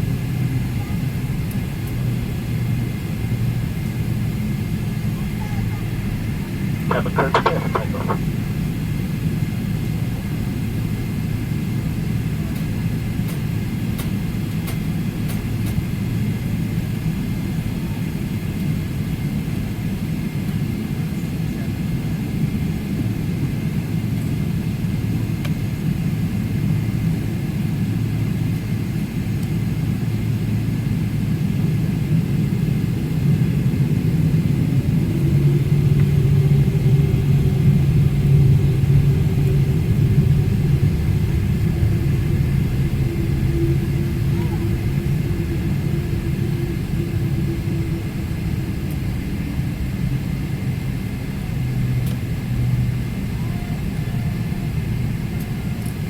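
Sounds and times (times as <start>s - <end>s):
jet engines rumbling in cabin: 0.0s - 56.0s
steady drone: 6.9s - 8.3s, 35.0s - 50.2s.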